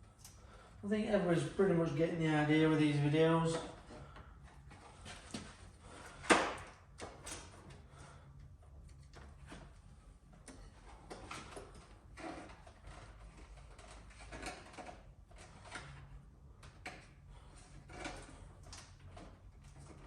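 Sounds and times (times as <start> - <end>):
low steady hum: 0.0 - 20.0.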